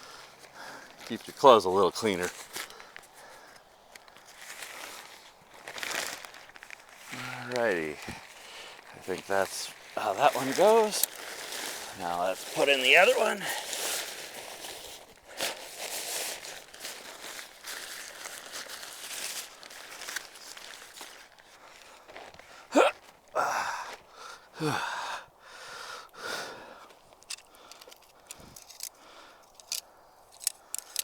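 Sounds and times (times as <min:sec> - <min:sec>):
tent fabric rustling: 0:03.9 - 0:23.3
tent pole squeaky scrapes: 0:09.0 - 0:21.2.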